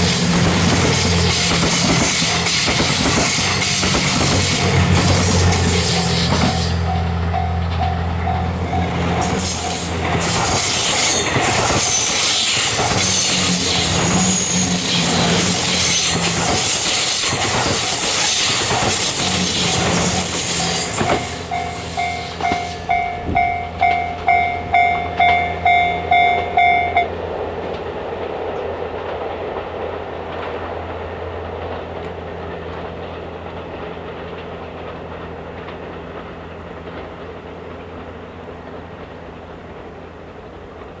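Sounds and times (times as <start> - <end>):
train rushing past: 0.0 - 41.0
level crossing bell dinging: 22.0 - 27.1.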